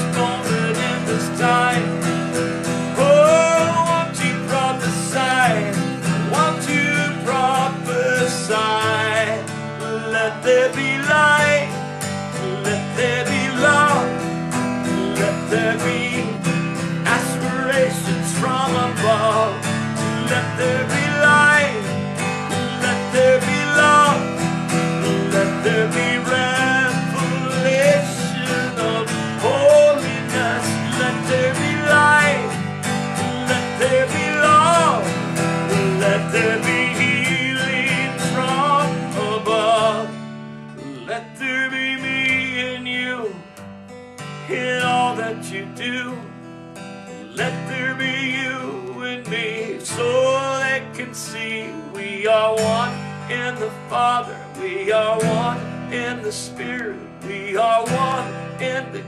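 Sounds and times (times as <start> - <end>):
strummed acoustic guitar: 0.0 - 59.0.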